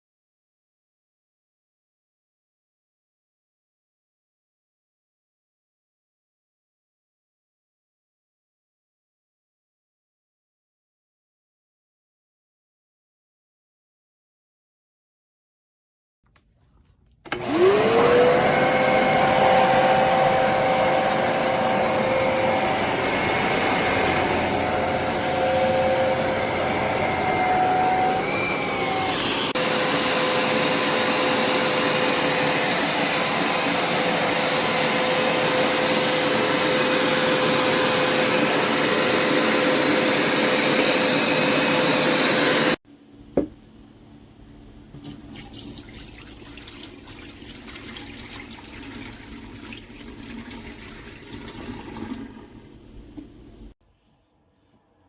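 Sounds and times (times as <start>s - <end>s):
carpet cleaner motor whining: 17.2s - 42.8s.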